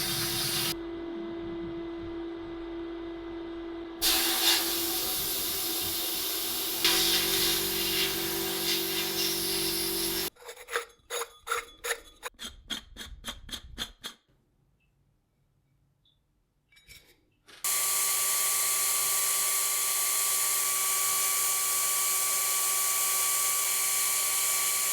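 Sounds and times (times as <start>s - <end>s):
loud steady hiss: 0.0s - 0.8s, 4.0s - 10.3s.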